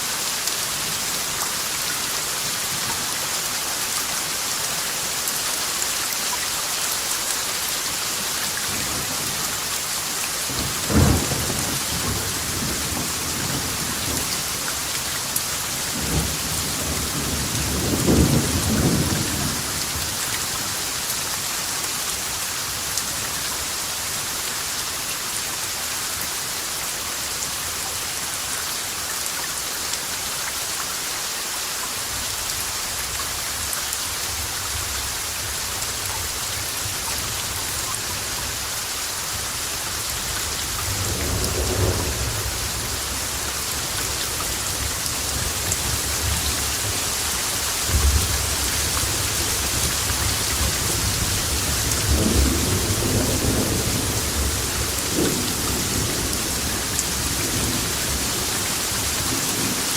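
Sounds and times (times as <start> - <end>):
steady rain hissing: 0.0 - 59.9
thunder cracks and rumble: 10.5 - 14.5, 16.0 - 20.2, 47.9 - 58.3.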